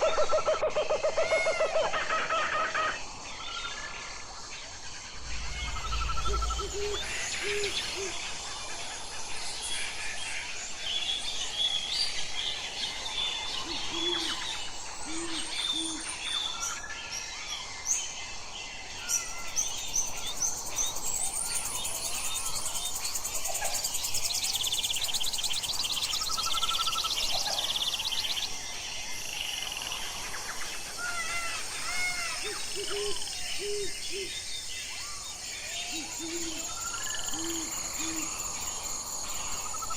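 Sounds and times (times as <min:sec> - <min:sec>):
owl hooting: 0:05.2 - 0:08.3, 0:35.9 - 0:38.3.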